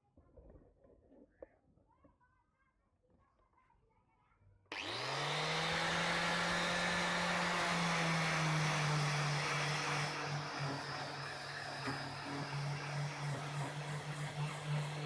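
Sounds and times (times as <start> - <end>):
power tool motor running: 4.7 - 15.0.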